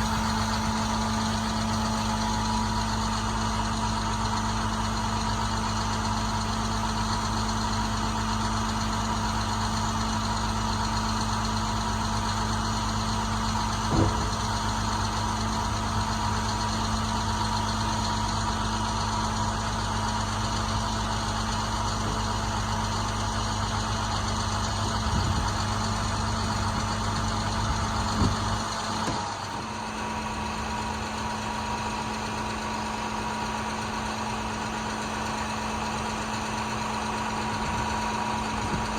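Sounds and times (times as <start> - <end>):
diesel engine idling: 0.0 - 38.9
short knocks: 13.8 - 14.8.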